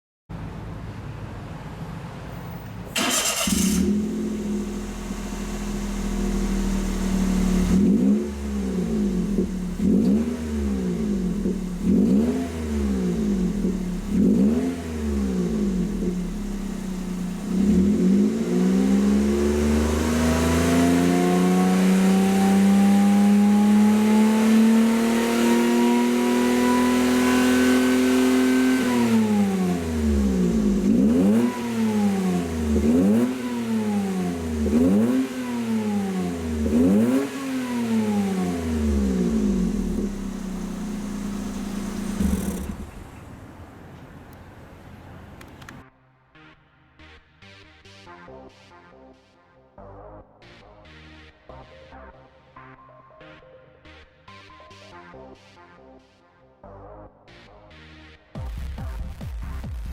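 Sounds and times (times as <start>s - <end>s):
car engine idling and revving: 0.4s - 45.8s
car engine starting: 2.3s - 45.8s.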